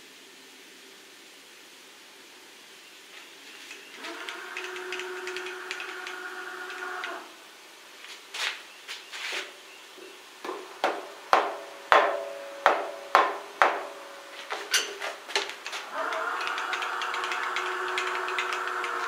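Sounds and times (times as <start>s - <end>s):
steady machine hum: 3.6s - 7.6s, 10.6s - 19.0s
hammer tapping on metal: 4.6s - 7.2s, 10.4s - 14.0s, 16.4s - 19.0s.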